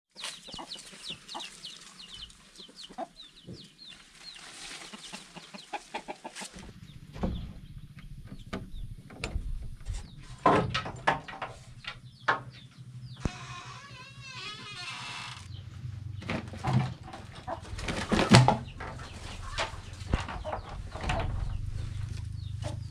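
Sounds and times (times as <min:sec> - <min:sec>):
chickens clucking: 0:00.1 - 0:13.8, 0:15.5 - 0:22.9.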